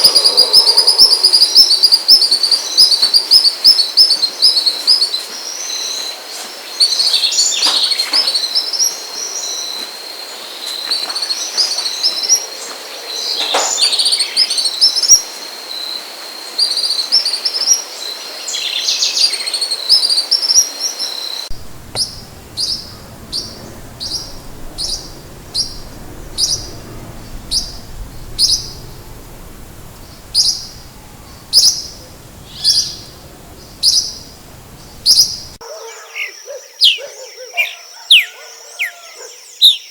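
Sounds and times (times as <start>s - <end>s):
birds chirping in chorus: 21.5s - 35.6s.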